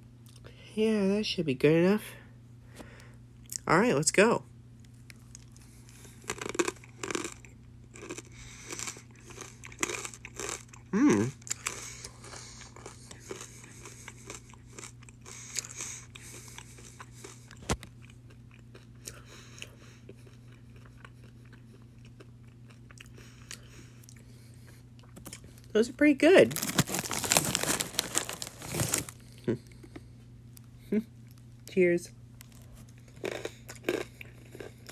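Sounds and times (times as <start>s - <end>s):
steady low hum: 0.0s - 34.9s
corn kernels crunching: 5.0s - 18.9s, 25.0s - 25.8s, 26.4s - 29.2s, 32.4s - 34.9s.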